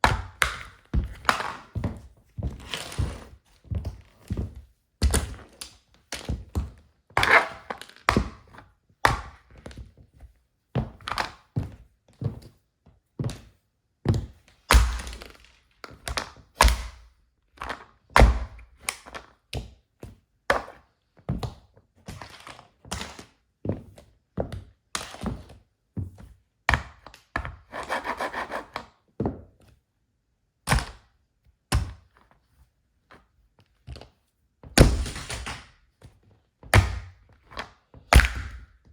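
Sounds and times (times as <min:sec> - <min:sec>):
shoes stamping on toy car: 0:16.0 - 0:17.0, 0:34.7 - 0:35.8, 0:36.7 - 0:38.9
heel crunching and grinding toy: 0:27.7 - 0:28.9.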